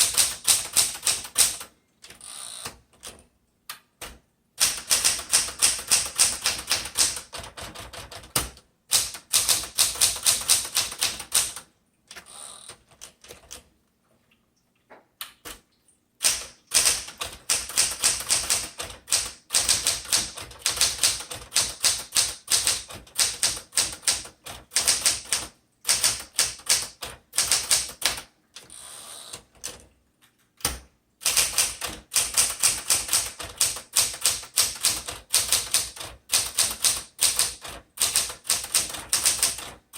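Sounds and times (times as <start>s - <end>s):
manual typewriter keystrokes: 0.0s - 13.7s, 16.2s - 29.9s, 30.6s - 39.9s.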